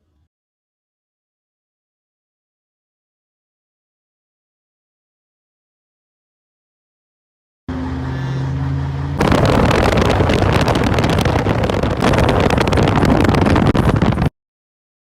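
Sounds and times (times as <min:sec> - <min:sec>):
car engine humming: 0:07.7 - 0:14.2
loud crackling rattling rush: 0:09.2 - 0:14.3.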